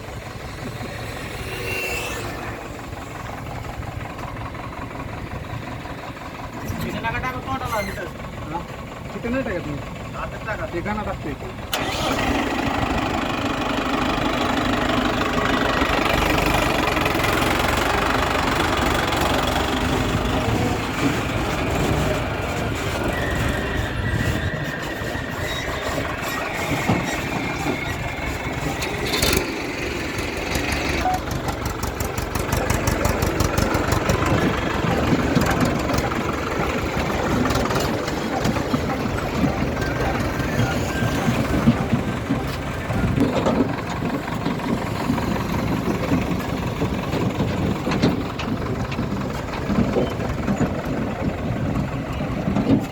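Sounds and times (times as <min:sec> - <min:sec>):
heavy diesel machinery running: 0:00.0 - 0:52.9.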